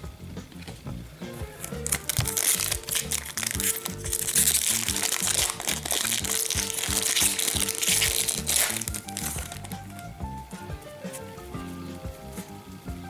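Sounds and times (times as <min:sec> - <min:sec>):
background music with a beat: 0:00.0 - 0:13.0
wrapper crinkling and tearing: 0:01.3 - 0:10.2.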